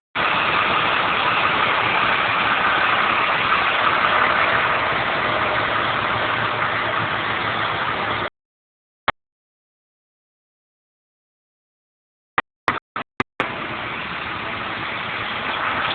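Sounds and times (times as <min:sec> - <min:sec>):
engine idling: 0:00.2 - 0:08.3, 0:13.4 - 0:15.9.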